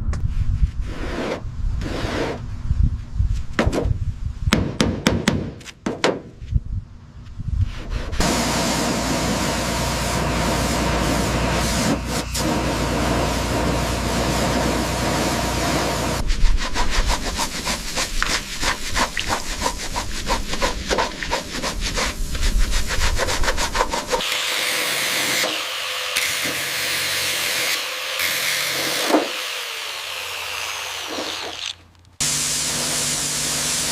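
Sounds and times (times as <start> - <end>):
tool scraping: 16.1 - 33.9
rapid repeated tool strokes: 16.3 - 31.8.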